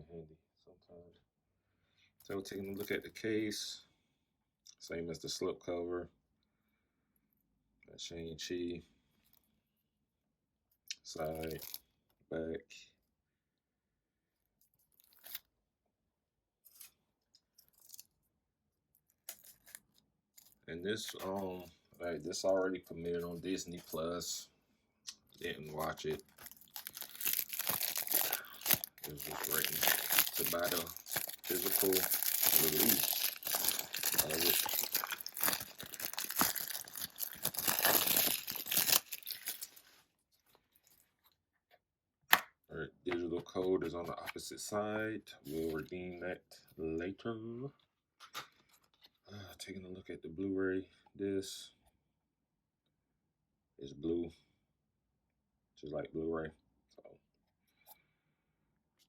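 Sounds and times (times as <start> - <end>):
plastic packaging crinkling and tearing: 11.3 - 11.8, 14.9 - 15.5, 17.6 - 18.1, 19.0 - 21.4, 25.4 - 41.0.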